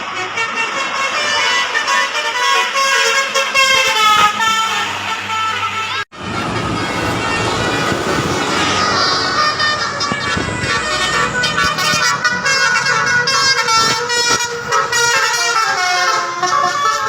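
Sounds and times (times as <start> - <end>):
multi-tone musical horn melody: 0.0 - 17.0
vehicle road noise: 0.0 - 17.0.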